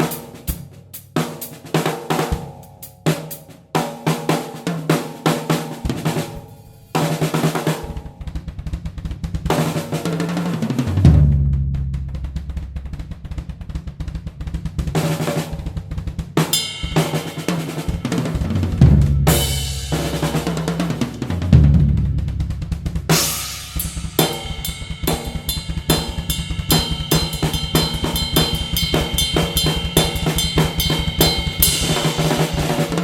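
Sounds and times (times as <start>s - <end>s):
bass drum: 7.9s - 33.0s
cymbals: 16.4s - 21.6s, 22.8s - 33.0s
deep ringing drum hits: 16.6s - 33.0s
snare drum strokes: 22.7s - 33.0s.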